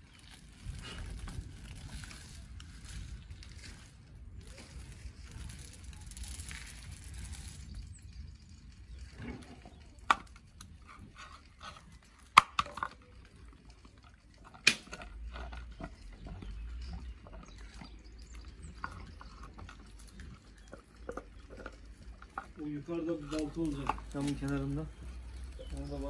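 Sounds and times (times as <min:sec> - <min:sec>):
sharp cracks: 0:12.1 - 0:13.2, 0:14.4 - 0:15.8.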